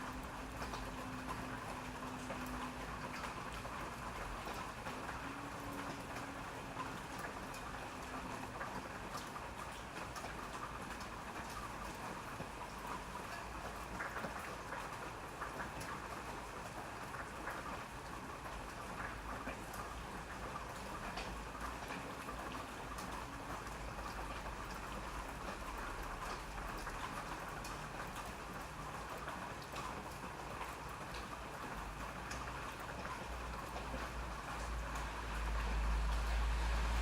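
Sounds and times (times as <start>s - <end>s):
raindrops ticking on a surface: 0.0s - 37.0s
rain hissing: 32.8s - 37.0s.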